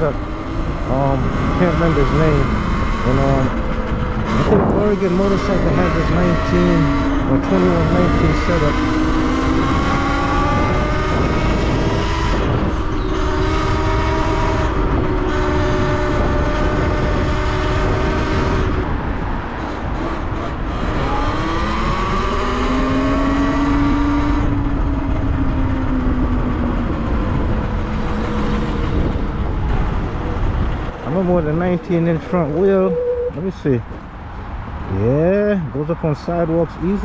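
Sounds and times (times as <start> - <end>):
wind noise on microphone: 0.0 - 35.2.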